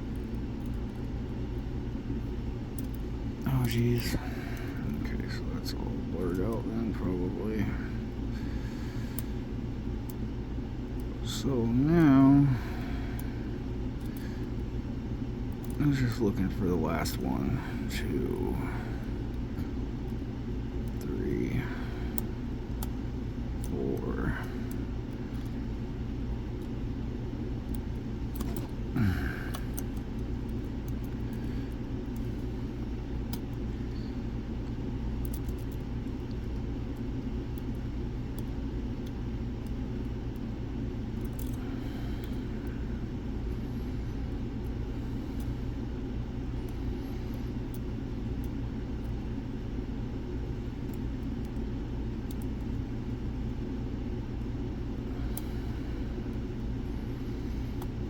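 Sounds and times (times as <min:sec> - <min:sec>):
low background rumble: 0:00.0 - 0:58.0
lock picks clicking: 0:41.2 - 0:41.6.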